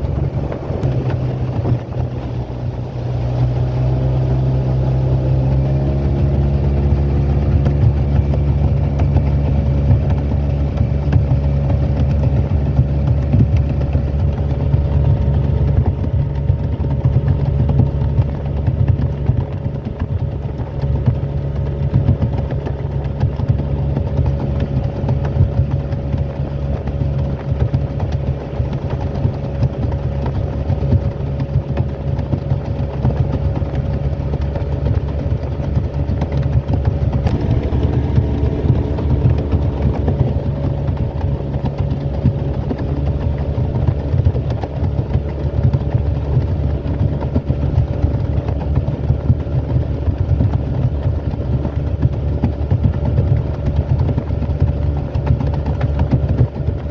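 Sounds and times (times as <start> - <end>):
boat motor running: 0.0 - 56.9.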